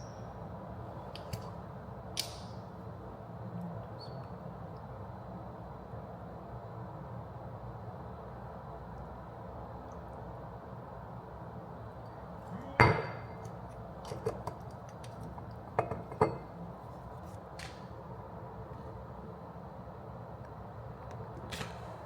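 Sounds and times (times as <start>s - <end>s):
glassware clinking: 12.7s - 13.5s, 15.8s - 16.5s.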